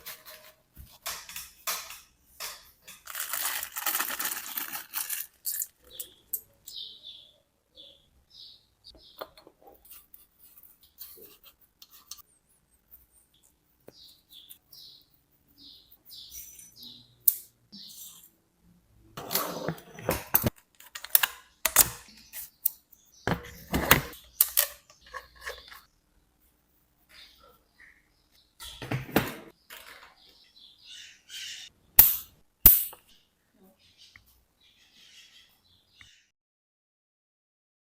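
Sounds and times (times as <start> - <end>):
metal parts clicking and clattering: 0.0 - 6.5.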